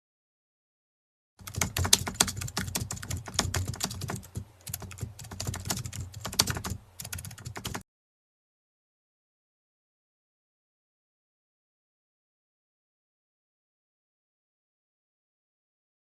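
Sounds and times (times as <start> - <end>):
typing on a keyboard: 1.4 - 7.8.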